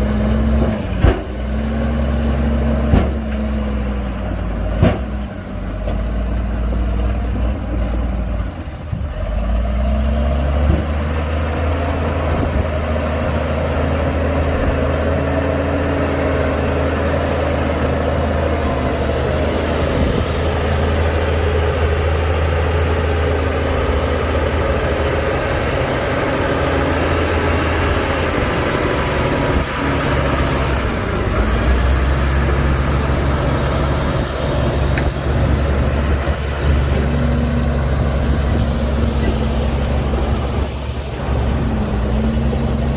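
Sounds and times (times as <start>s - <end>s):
heavy diesel machinery engine drone: 0.0s - 42.9s.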